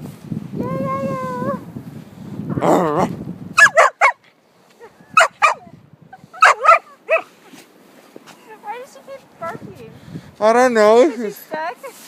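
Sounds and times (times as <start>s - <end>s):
puppy barking: 3.6s - 4.2s, 5.2s - 5.7s, 6.4s - 7.3s.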